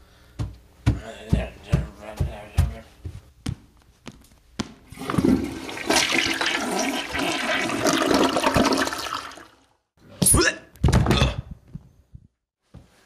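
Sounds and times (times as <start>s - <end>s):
toilet flushing: 4.9s - 9.7s.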